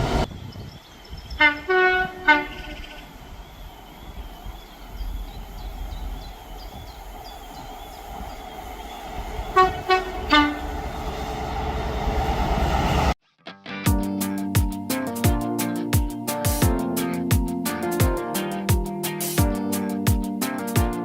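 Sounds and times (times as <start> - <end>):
train rumble: 0.0 - 0.5, 1.2 - 13.2
two-tone train horn toots: 1.4 - 3.1, 9.5 - 11.0.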